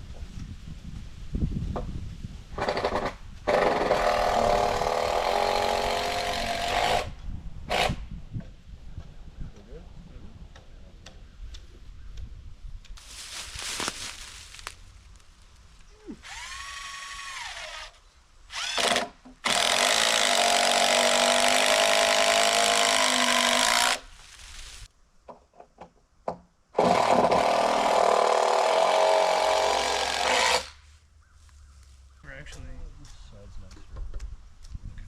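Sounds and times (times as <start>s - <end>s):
power drill whirring: 16.2s - 24.0s.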